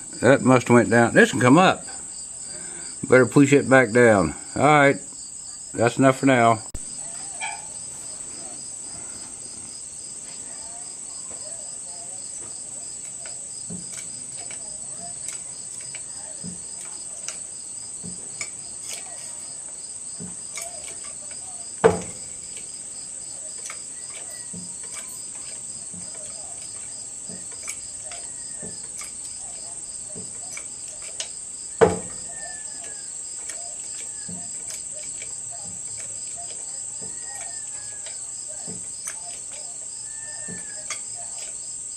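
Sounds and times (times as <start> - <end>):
insects trilling: 0.0 - 41.9
sharp knocks: 21.8 - 22.5, 31.7 - 32.3
faint bird chirps: 23.3 - 25.5, 31.7 - 41.4.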